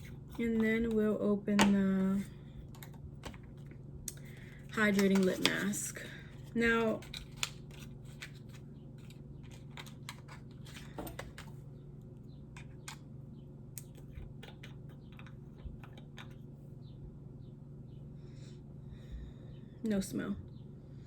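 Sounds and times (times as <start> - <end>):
faint steady hum: 0.0 - 21.0
packaging clicks and taps: 6.9 - 11.6.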